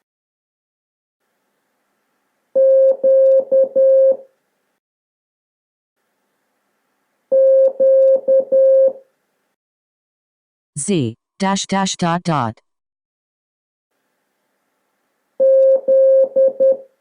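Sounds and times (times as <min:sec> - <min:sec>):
morse code beeps: 0:02.6 - 0:04.3, 0:07.3 - 0:09.0, 0:15.4 - 0:16.9.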